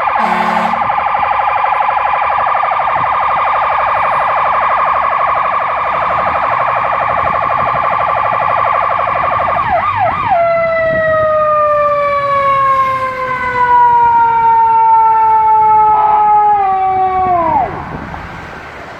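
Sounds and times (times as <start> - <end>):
fire engine siren: 0.0 - 18.9.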